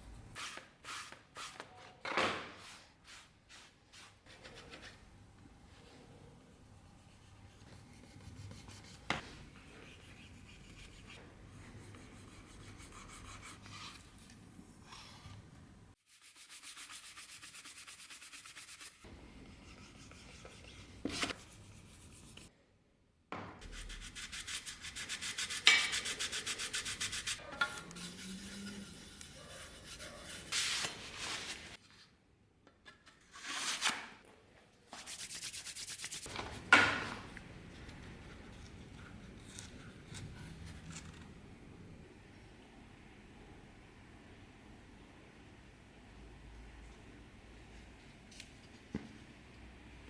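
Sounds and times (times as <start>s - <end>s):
rubbing strokes on knife: 23.7s - 31.6s.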